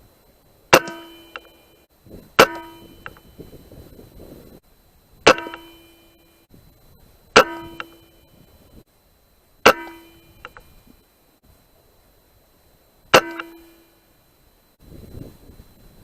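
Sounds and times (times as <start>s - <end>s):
metallic clang ringing: 0.7s - 3.5s, 5.2s - 6.5s, 7.3s - 8.4s, 9.6s - 10.7s, 13.1s - 14.0s.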